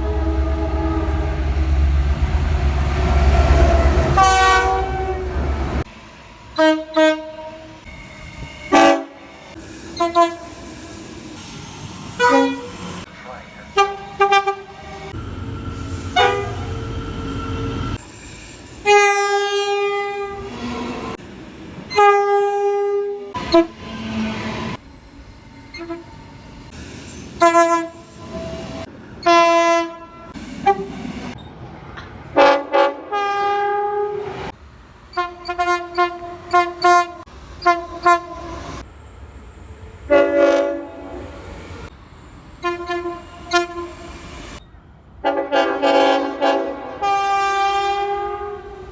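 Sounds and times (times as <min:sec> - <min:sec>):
train horn blasts and toots: 0:00.0 - 0:02.0, 0:02.6 - 0:05.8, 0:06.5 - 0:07.9, 0:08.7 - 0:09.3, 0:09.9 - 0:10.7, 0:12.2 - 0:12.8, 0:13.8 - 0:15.2, 0:16.1 - 0:16.8, 0:18.8 - 0:20.5, 0:21.9 - 0:24.5, 0:25.7 - 0:26.1, 0:27.4 - 0:31.4, 0:32.4 - 0:38.8, 0:40.1 - 0:41.3, 0:42.6 - 0:44.1, 0:45.2 - 0:48.9
train rumble and rail noise: 0:00.0 - 0:48.9.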